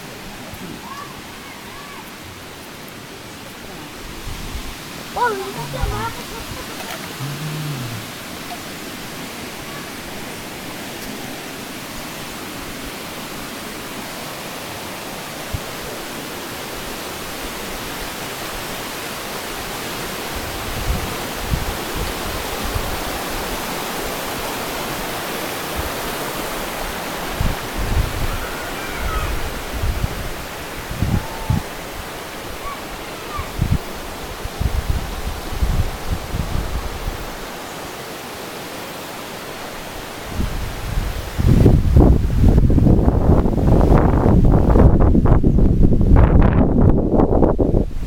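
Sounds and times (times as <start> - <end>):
low thumps on microphone: 7.0 - 8.2.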